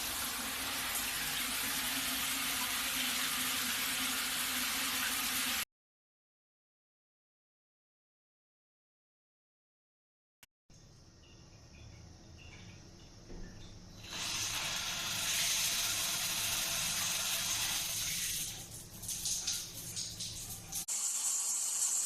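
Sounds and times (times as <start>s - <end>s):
faint hum: 10.7s - 14.1s
water spraying from hand shower: 14.0s - 22.0s.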